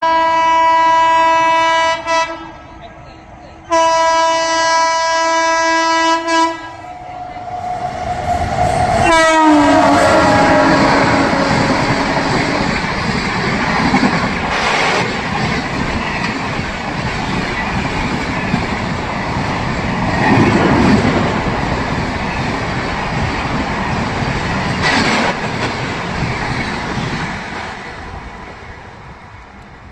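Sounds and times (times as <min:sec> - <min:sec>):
locomotive horn blast: 0:00.0 - 0:02.6, 0:03.7 - 0:12.7
train rushing past: 0:00.1 - 0:29.9
train hiss: 0:14.4 - 0:15.4.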